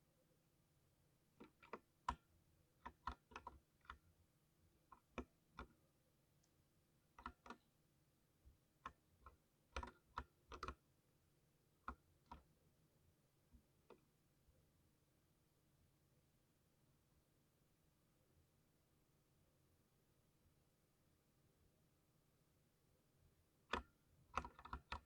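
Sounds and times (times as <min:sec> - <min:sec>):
mechanical keyboard keystrokes: 0:23.7 - 0:25.0.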